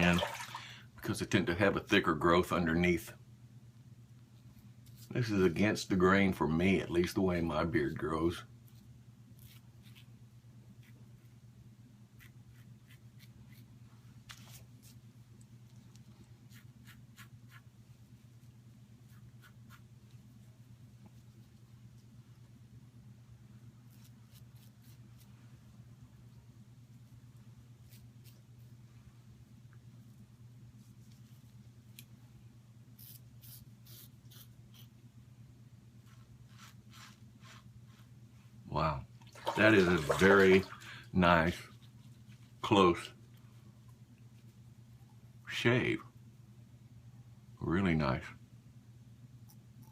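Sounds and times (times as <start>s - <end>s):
steady low hum: 0.0s - 49.9s
razor scraping stubble: 23.9s - 25.3s, 33.0s - 34.9s.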